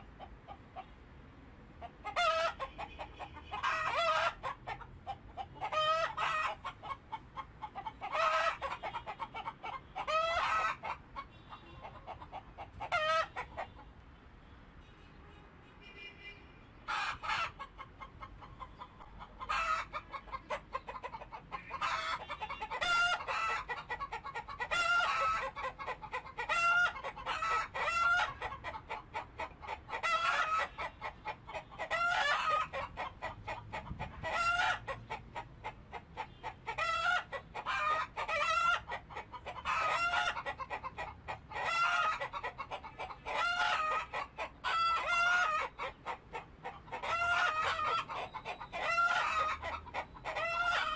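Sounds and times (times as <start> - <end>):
chickens clucking: 0.0 - 1.0, 1.8 - 14.0, 16.8 - 50.9.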